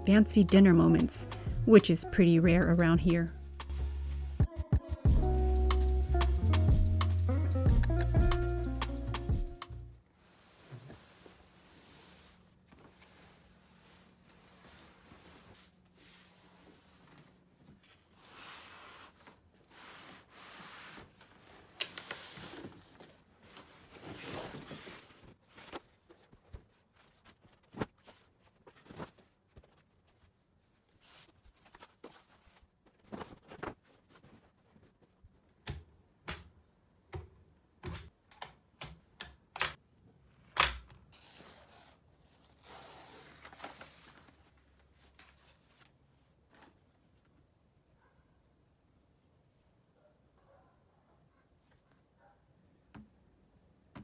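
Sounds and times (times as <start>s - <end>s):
packaging rustling and tearing: 41.2s - 44.3s.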